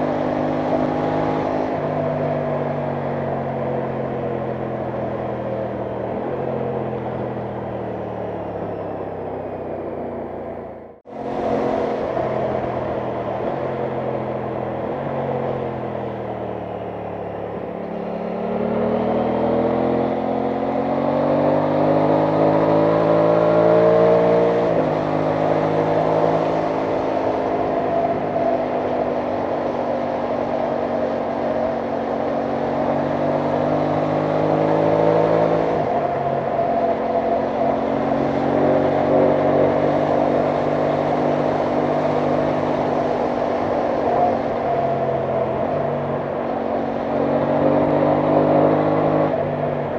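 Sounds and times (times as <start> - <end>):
motorcycle engine revving: 0.0 - 49.9
rushing wind: 10.7 - 49.9.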